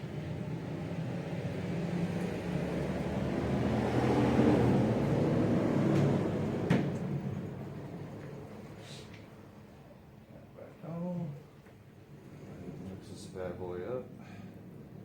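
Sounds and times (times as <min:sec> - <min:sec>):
passing vehicle engine: 0:00.0 - 0:08.5.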